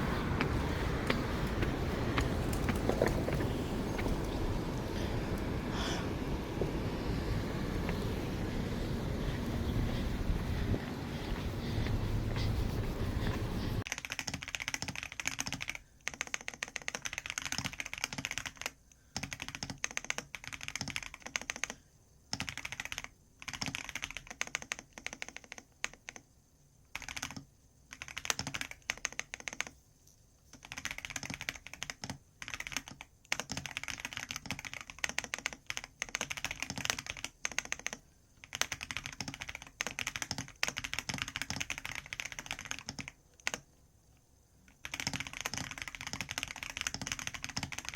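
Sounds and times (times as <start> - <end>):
typing on keyboard: 12.3 - 26.3, 26.9 - 29.8, 30.5 - 43.8, 44.7 - 47.9.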